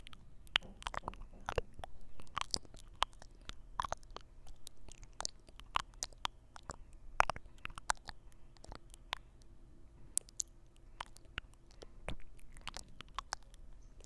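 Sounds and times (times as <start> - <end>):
wet mouth clicks and smacks: 0.0 - 9.5, 10.1 - 14.0.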